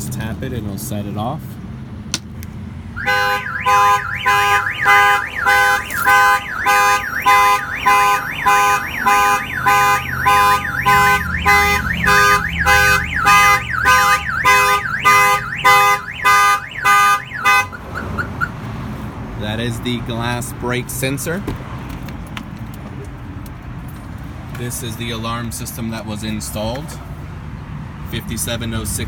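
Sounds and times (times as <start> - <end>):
car alarm siren: 3.0 - 18.6.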